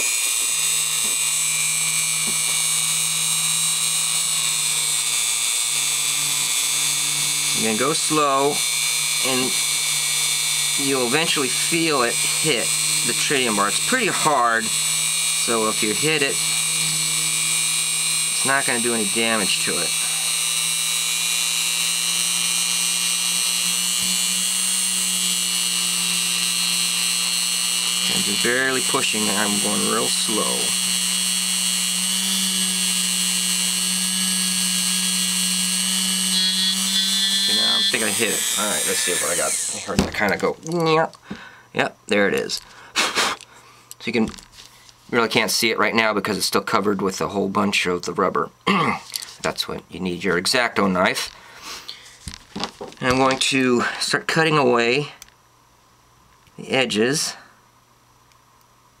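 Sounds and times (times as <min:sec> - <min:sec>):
electric drill motor whine: 0:00.0 - 0:40.5.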